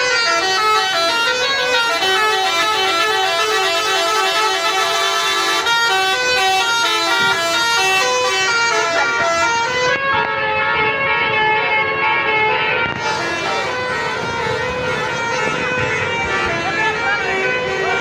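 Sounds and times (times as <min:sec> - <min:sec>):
multi-tone bus horn melody: 0:00.0 - 0:18.0.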